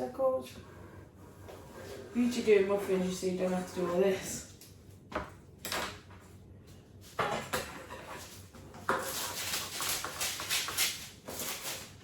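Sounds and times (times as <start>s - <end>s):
baking paper rustling and crinkling: 8.3s - 12.0s.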